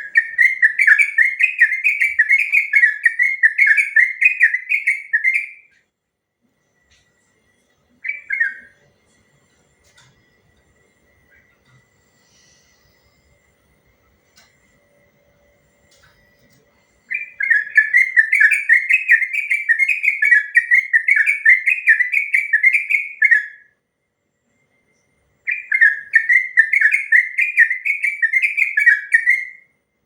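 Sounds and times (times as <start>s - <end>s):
bird singing whistled notes: 0.0s - 5.8s, 8.0s - 8.9s, 17.1s - 23.7s, 25.4s - 29.7s.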